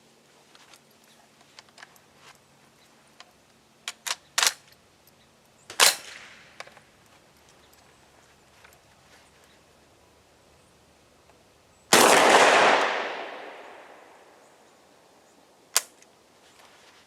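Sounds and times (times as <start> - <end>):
shotgun blast echoing: 11.9 - 14.4.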